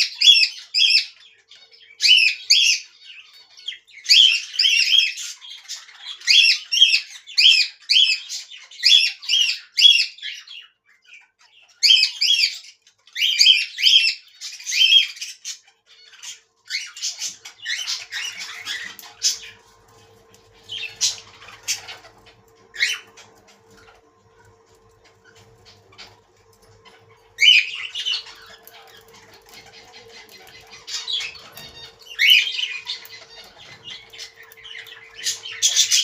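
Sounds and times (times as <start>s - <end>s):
budgerigars squawking and chattering: 0.0s - 36.0s
faint steady hum: 15.9s - 36.0s.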